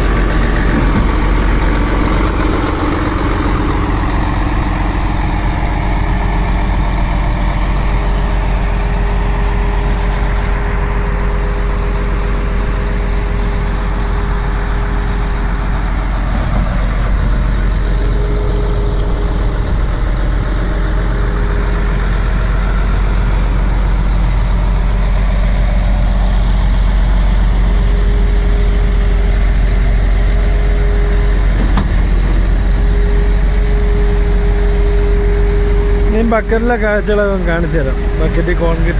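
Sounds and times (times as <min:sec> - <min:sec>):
low engine drone: 0:00.0 - 0:38.9
mid-pitched pump tone: 0:27.1 - 0:38.9.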